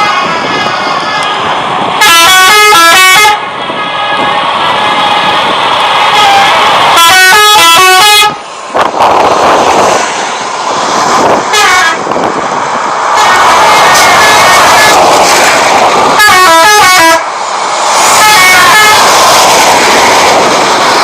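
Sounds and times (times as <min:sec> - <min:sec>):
loud noise: 0:00.0 - 0:21.0
multi-tone musical air horn: 0:02.0 - 0:05.4, 0:06.1 - 0:08.4, 0:11.5 - 0:12.0, 0:16.2 - 0:17.2.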